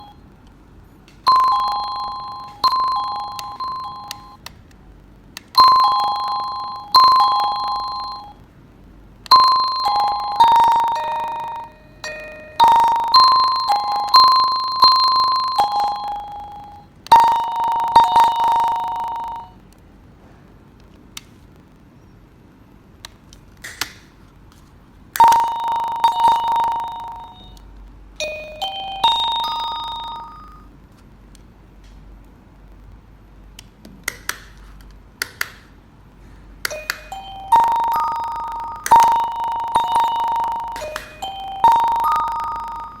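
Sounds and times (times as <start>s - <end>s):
doorbell electronic chime: 1.3s - 4.4s, 5.6s - 8.4s, 9.3s - 19.6s, 25.2s - 27.6s, 28.2s - 30.7s, 36.7s - 43.0s.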